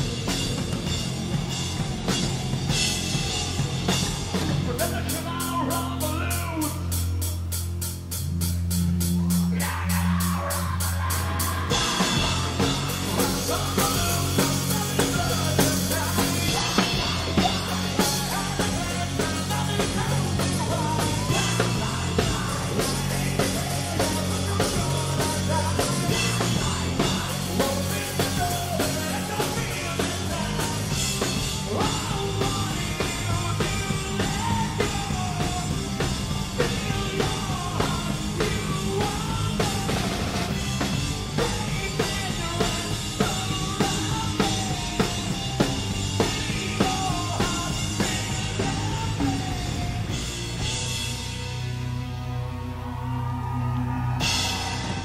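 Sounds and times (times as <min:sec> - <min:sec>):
bass guitar: 0:00.0 - 0:55.0
drum kit: 0:00.0 - 0:55.0
person singing: 0:09.2 - 0:40.5, 0:46.2 - 0:50.1
electric guitar: 0:09.2 - 0:55.0.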